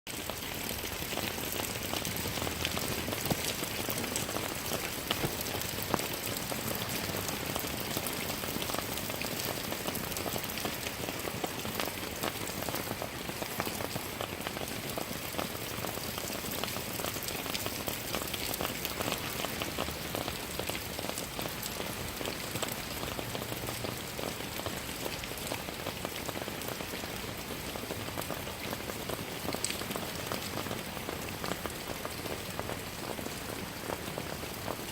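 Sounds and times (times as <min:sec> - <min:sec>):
steady rain falling: 0:00.1 - 0:34.9.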